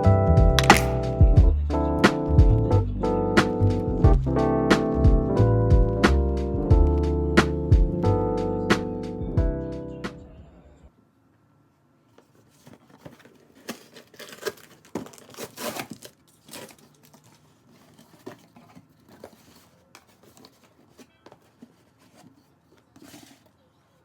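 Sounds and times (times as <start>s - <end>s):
rustling: 12.0s - 24.0s.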